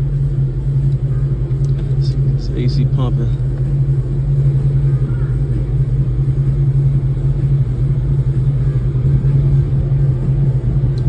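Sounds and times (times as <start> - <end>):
car engine idling: 0.0 - 11.0.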